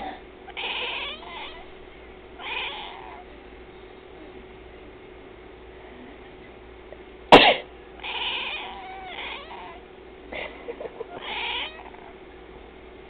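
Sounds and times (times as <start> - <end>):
cat meowing: 0.5 - 1.7, 2.4 - 3.3, 8.0 - 9.8, 11.1 - 12.2
person coughing: 7.3 - 7.7.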